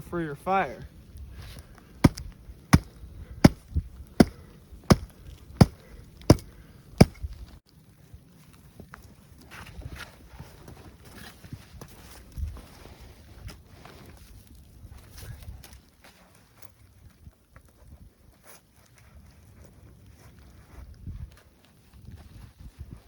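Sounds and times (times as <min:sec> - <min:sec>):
knocks on wood: 0:04.2 - 0:06.4.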